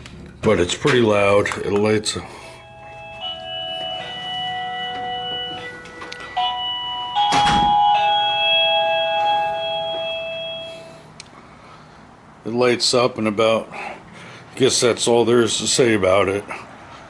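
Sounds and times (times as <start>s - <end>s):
doorbell chime melody: 2.4s - 11.0s.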